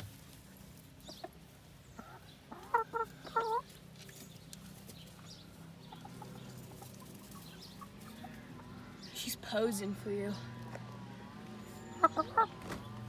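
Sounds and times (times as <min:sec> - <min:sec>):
hen clucking: 0:01.0 - 0:03.8, 0:05.5 - 0:09.2, 0:09.8 - 0:13.0.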